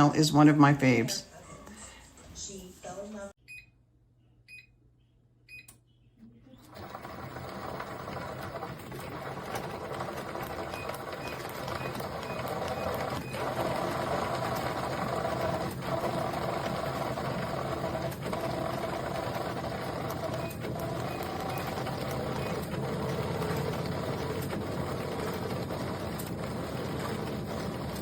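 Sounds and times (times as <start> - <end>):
treadmill beeping: 3.5 - 3.8, 4.5 - 4.8, 5.5 - 5.8, 6.6 - 28.0
treadmill motor whirring: 6.6 - 28.0.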